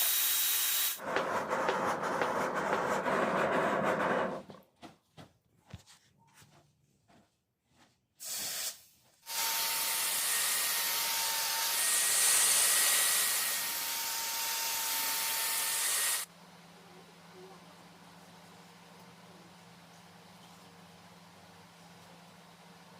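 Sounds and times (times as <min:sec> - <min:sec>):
loud steady hiss: 0:00.0 - 0:01.0.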